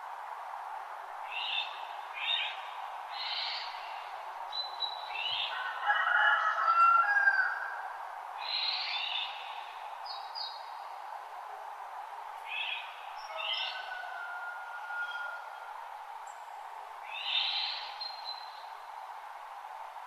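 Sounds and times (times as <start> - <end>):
songbirds chirping: 8.4 - 11.2, 12.4 - 19.4.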